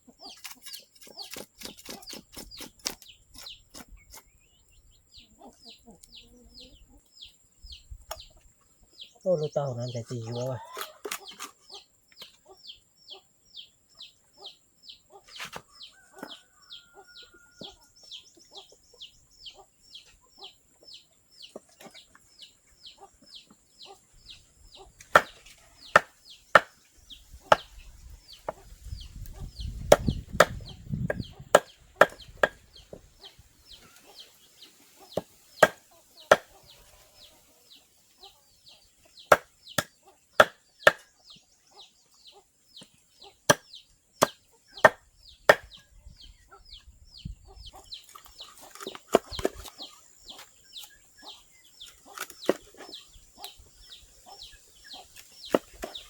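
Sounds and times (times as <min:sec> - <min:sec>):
loud chopping strikes: 0:25.0 - 0:26.8, 0:27.5 - 0:27.7, 0:35.2 - 0:36.5, 0:39.3 - 0:41.1.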